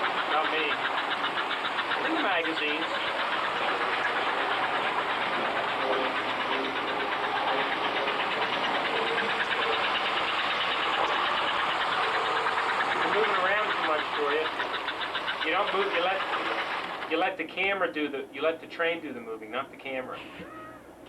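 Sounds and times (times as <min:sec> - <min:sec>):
toy train motor whirring: 0:00.0 - 0:17.1
train wheels clicking on rails: 0:00.0 - 0:19.5.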